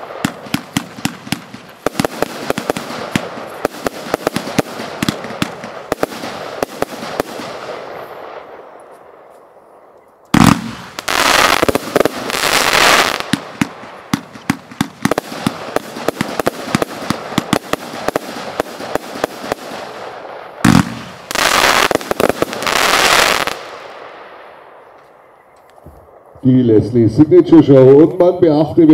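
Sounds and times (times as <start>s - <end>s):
hissing firework bursts: 0.0s - 8.5s, 10.3s - 24.4s
firework crackling: 0.0s - 8.7s, 10.3s - 24.7s.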